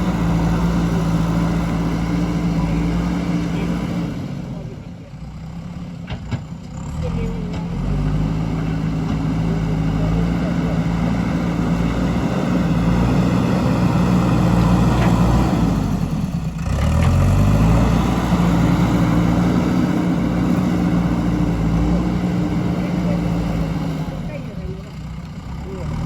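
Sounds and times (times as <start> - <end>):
diesel engine running under load: 0.0 - 26.0.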